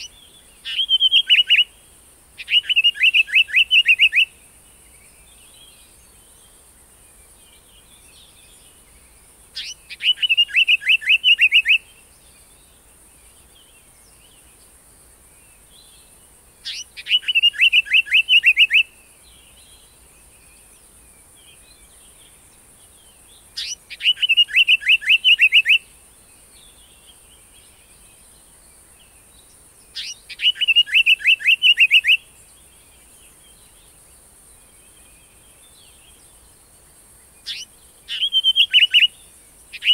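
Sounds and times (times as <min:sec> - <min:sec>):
bird calling with down-slurred notes: 0:00.0 - 0:01.8, 0:02.4 - 0:14.6, 0:15.5 - 0:39.9
faint chirps: 0:00.0 - 0:39.9.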